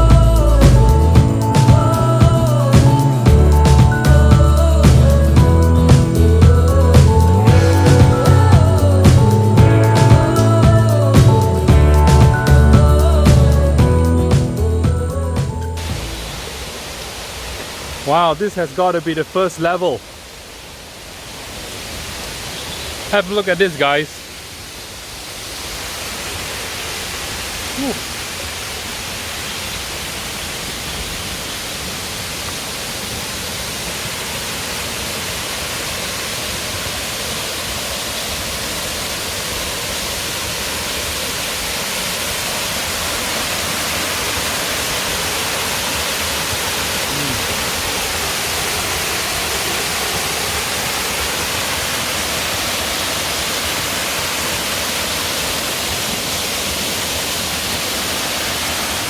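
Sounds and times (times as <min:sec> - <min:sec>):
waterfall rushing: 0:00.0 - 0:14.6, 0:15.4 - 0:59.0.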